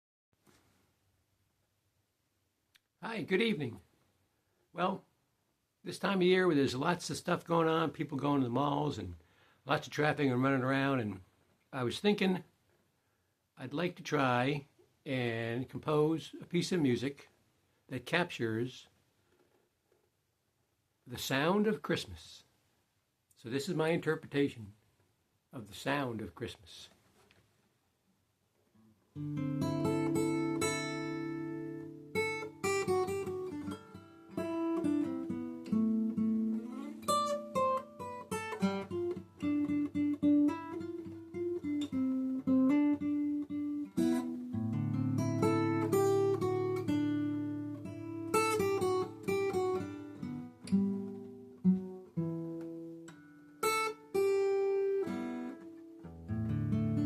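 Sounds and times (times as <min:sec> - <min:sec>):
acoustic guitar playing: 0:29.1 - 0:57.0.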